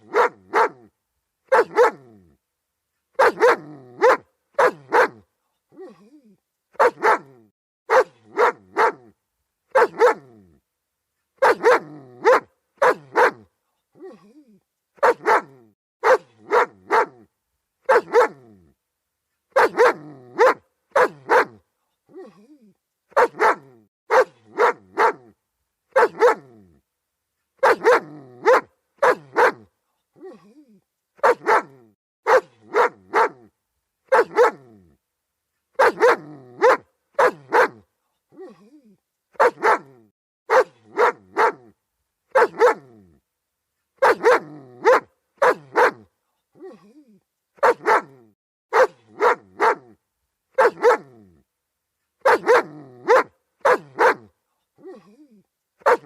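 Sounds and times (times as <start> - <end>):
dog barking: 0.0 - 0.9, 1.5 - 2.2, 3.2 - 5.9, 6.7 - 10.4, 11.4 - 14.2, 15.0 - 18.5, 19.5 - 21.6, 23.1 - 26.6, 27.6 - 30.4, 31.2 - 33.5, 34.1 - 34.8, 35.8 - 38.6, 39.3 - 43.0, 44.0 - 46.8, 47.6 - 51.2, 52.2 - 55.0, 55.8 - 56.0.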